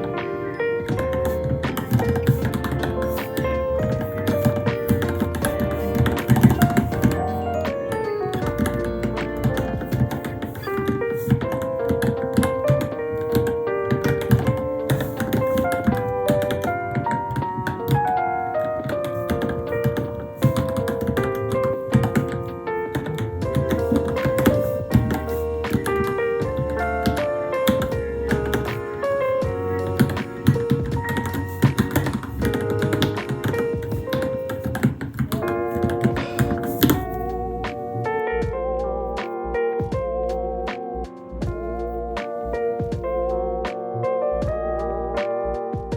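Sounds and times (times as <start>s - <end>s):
background piano music: 0.0s - 45.9s
mechanical keyboard typing: 0.8s - 37.3s
mechanical keyboard keystrokes: 29.9s - 37.1s.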